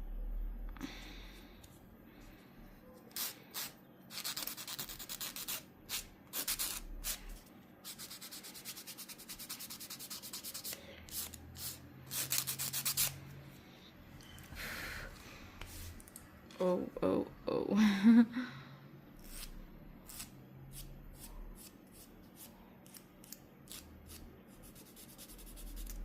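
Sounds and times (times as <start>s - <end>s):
nail file rasping on fingernail: 3.2s - 7.2s, 7.8s - 13.2s, 19.2s - 19.5s, 20.1s - 26.0s.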